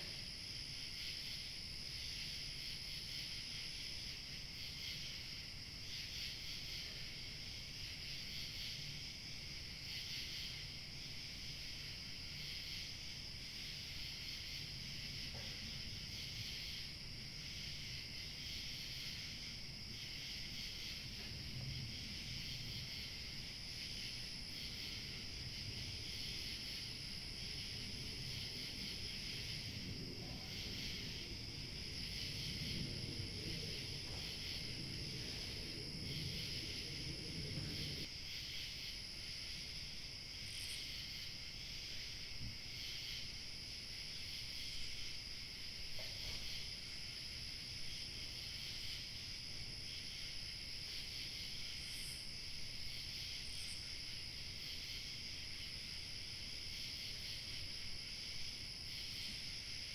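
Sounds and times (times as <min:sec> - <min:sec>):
field crickets chirping: 0:00.0 - 0:59.9
low wind rumble: 0:14.3 - 0:38.2.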